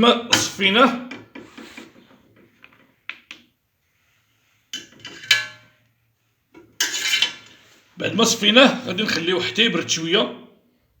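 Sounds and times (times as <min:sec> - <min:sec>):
dish scraping: 0:04.8 - 0:05.8, 0:06.6 - 0:07.9.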